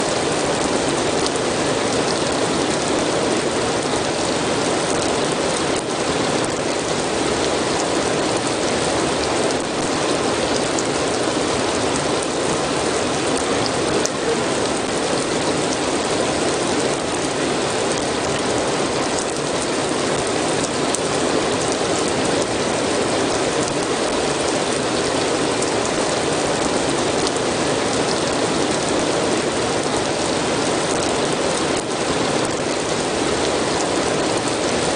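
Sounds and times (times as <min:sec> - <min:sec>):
steady rain falling: 0:00.0 - 0:34.9.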